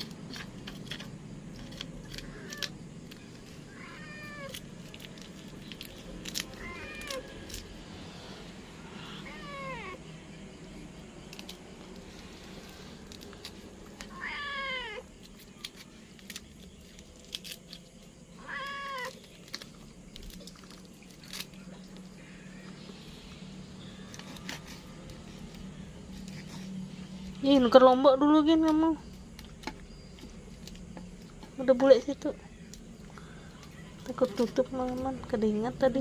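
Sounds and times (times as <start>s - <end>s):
cat meowing: 3.7s - 4.6s, 6.6s - 7.4s, 9.0s - 10.0s, 14.1s - 15.1s, 18.4s - 19.2s.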